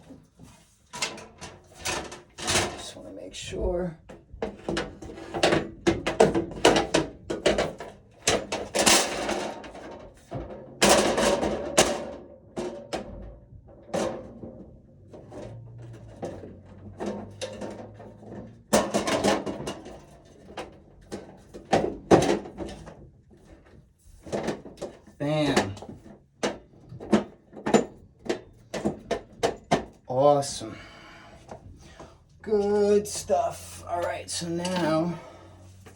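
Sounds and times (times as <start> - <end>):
metal clicks and scraping: 33.9 - 35.2.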